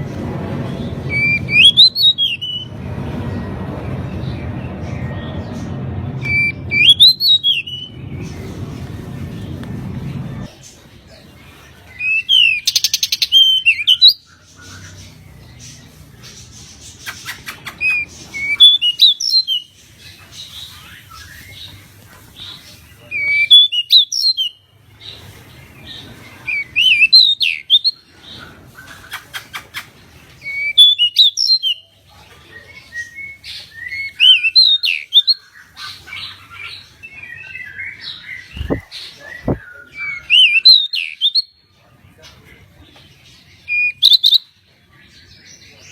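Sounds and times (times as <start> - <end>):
bird warbling song: 4.1 - 9.6, 10.3 - 41.6
low thumps: 38.6 - 39.6.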